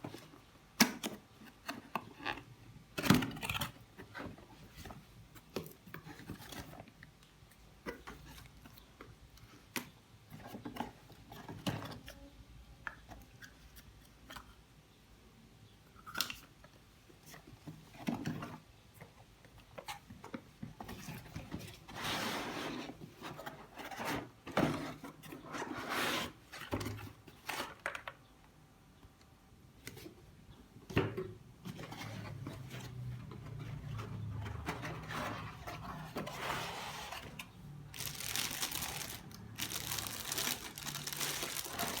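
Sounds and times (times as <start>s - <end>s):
packaging rustling and tearing: 37.9s - 42.0s.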